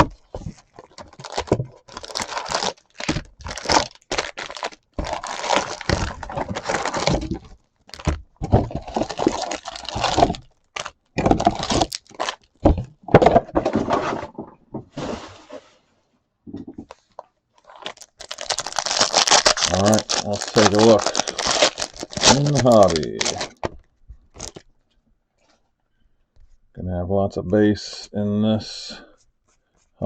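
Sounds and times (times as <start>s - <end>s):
packaging tearing and crinkling: 0.6s - 12.6s, 17.6s - 23.7s, 24.3s - 24.6s.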